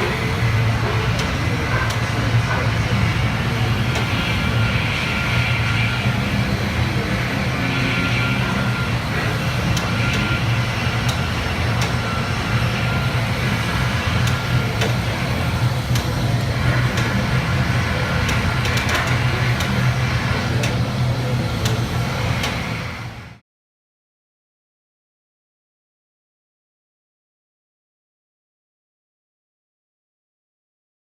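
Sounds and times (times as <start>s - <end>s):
low mechanical hum: 0.0s - 23.4s.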